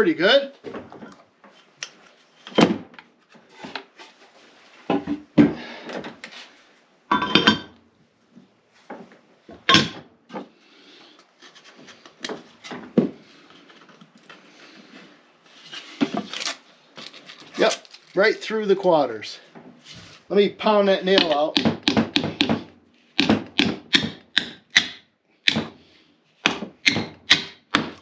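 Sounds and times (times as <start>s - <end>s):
plywood and metal clattering: 0.6s - 4.0s, 8.8s - 10.5s, 11.5s - 14.0s.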